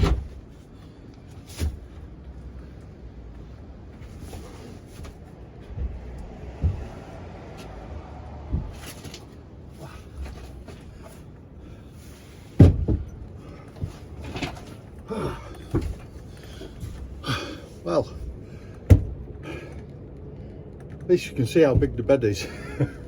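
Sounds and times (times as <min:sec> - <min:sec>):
boards thumping and knocking: 0:00.0 - 0:00.6, 0:04.8 - 0:11.2, 0:12.4 - 0:17.5, 0:18.8 - 0:19.4, 0:21.6 - 0:22.1.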